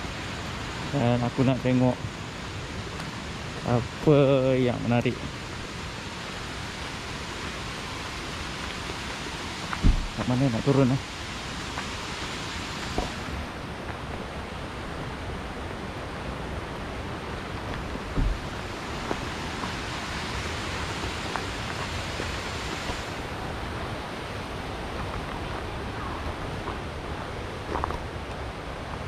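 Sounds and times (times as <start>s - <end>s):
river rushing: 0.0s - 29.0s
short thump: 9.8s - 10.2s, 18.2s - 18.4s.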